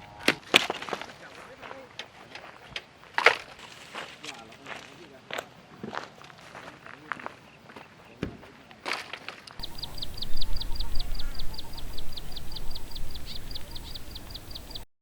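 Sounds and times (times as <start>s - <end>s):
rapid high chirping call: 9.6s - 14.9s.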